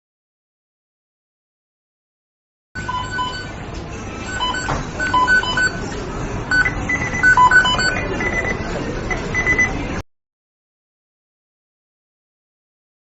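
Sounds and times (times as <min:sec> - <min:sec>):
short electronic beeps: 0:02.8 - 0:03.5, 0:04.2 - 0:05.9, 0:06.5 - 0:09.9.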